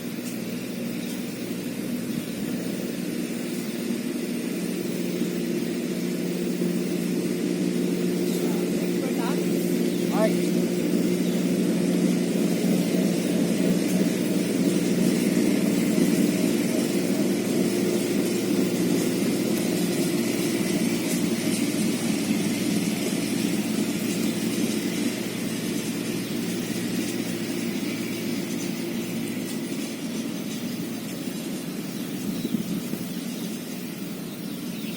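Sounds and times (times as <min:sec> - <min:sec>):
motor engine running: 0:00.0 - 0:34.9.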